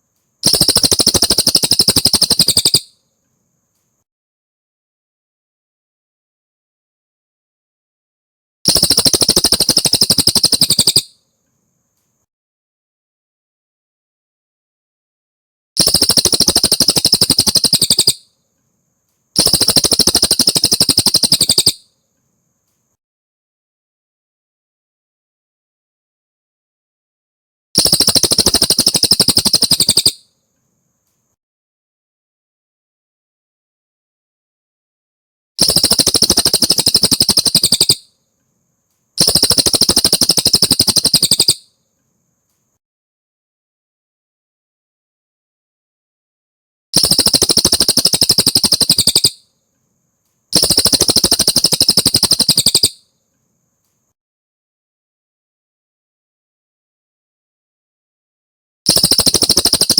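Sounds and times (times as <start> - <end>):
songbird trills: 0.4 - 3.0, 8.7 - 11.3, 15.8 - 18.4, 19.4 - 22.0, 27.8 - 30.3, 35.6 - 38.2, 39.2 - 41.7, 47.0 - 49.5, 50.6 - 53.1.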